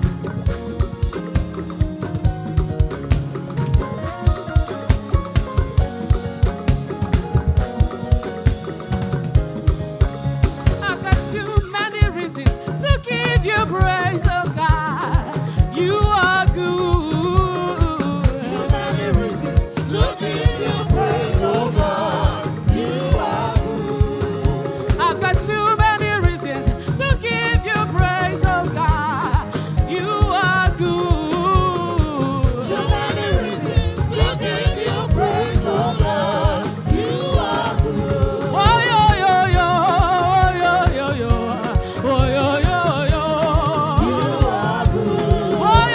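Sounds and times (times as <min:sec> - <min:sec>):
drum kit beat: 0:00.0 - 0:45.9
choir singing: 0:15.8 - 0:26.8, 0:27.8 - 0:45.9.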